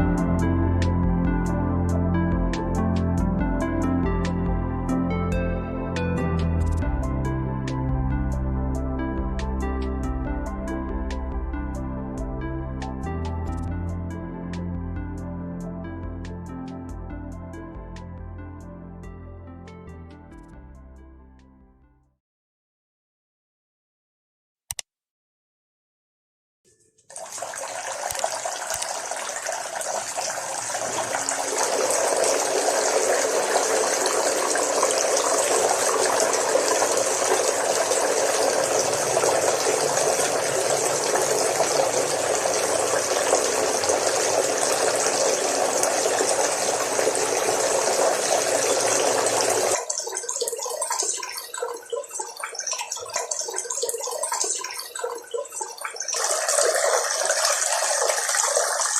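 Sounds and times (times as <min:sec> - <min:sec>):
water splashing down waterfall: 0:27.2 - 0:49.8.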